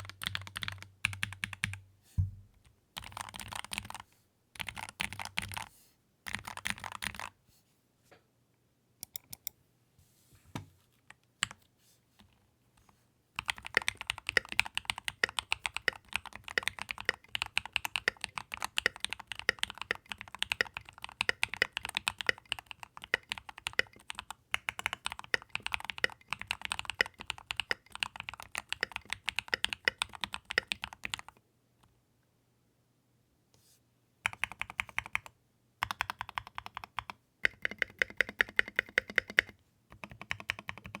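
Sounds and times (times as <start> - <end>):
mechanical keyboard typing: 0.0 - 1.8, 3.0 - 4.0, 4.6 - 5.7, 6.3 - 7.4, 9.0 - 9.5, 13.4 - 31.4, 34.3 - 41.0.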